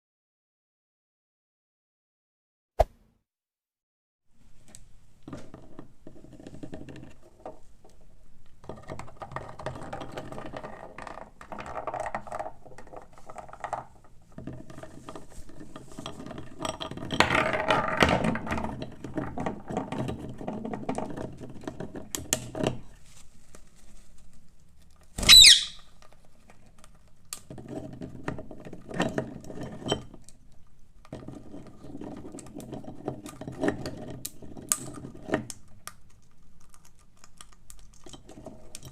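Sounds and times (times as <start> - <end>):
parrot squawk: 25.2 - 25.9.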